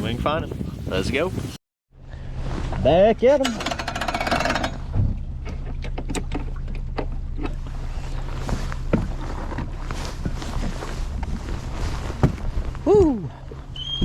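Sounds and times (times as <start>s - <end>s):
wind on microphone: 0.0s - 1.6s, 4.8s - 5.8s, 7.6s - 14.0s.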